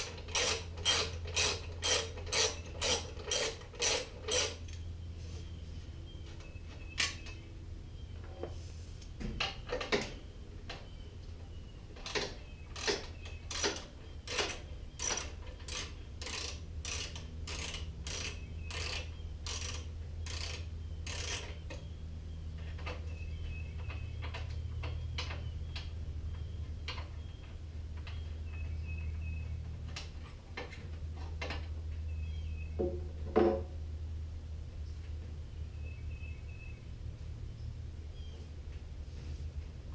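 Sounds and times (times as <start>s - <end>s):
steady low hum: 0.0s - 39.9s
metallic ratchet clicks: 12.0s - 21.5s.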